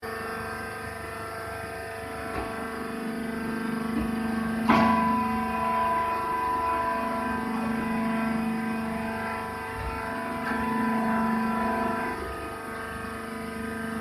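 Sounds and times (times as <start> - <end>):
high whine: 0.0 - 14.0
motor and pump hum: 0.0 - 14.0
loud metal clank: 4.0 - 5.5.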